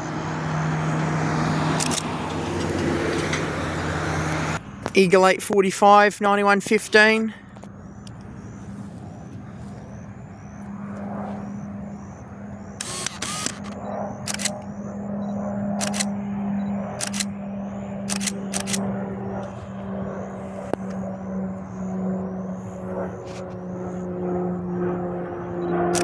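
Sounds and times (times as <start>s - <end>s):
camera shutter clicks: 1.8s - 2.1s, 12.8s - 14.7s, 15.8s - 16.1s, 17.0s - 17.3s, 18.1s - 18.8s
steady low drone: 6.6s - 26.0s.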